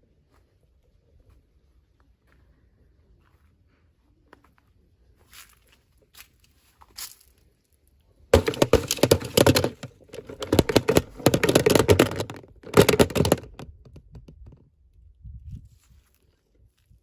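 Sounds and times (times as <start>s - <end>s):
toy packaging crackling: 8.4s - 13.6s.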